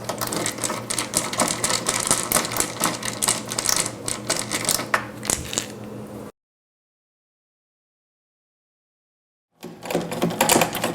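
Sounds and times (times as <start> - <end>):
small parts and tools clattering: 0.0 - 5.8
steady low hum: 0.0 - 6.3.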